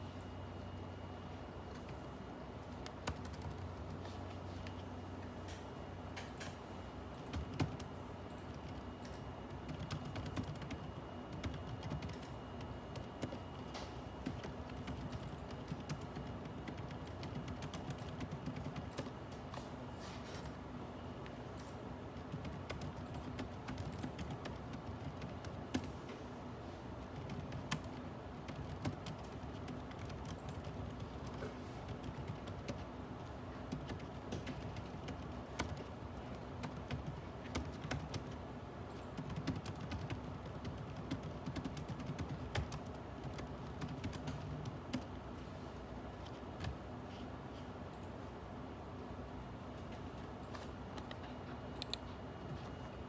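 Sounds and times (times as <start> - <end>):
low room hum: 0.0 - 53.0
keyboard typing: 2.7 - 4.8, 7.2 - 19.2, 22.2 - 26.0, 27.1 - 32.9, 33.7 - 45.2.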